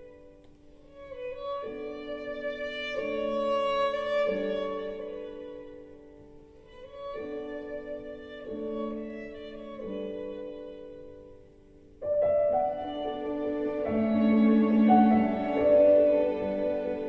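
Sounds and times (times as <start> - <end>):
slow soft violin chords: 0.0 - 17.0.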